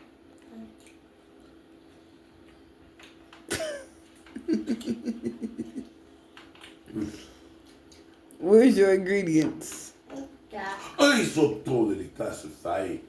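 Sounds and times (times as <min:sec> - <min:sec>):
faint steady hum: 0:00.0 - 0:13.0
person laughing: 0:03.5 - 0:05.9.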